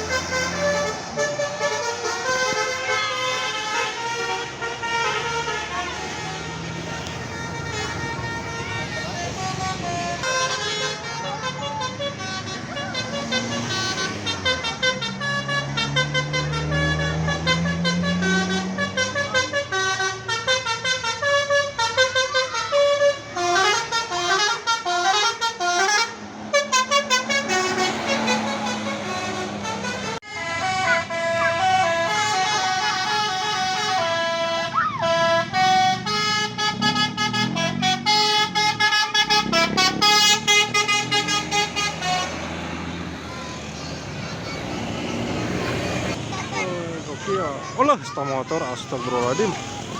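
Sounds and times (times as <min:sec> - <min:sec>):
multi-tone bus horn tunes: 0:00.0 - 0:47.1
bus engine running: 0:00.0 - 0:49.9.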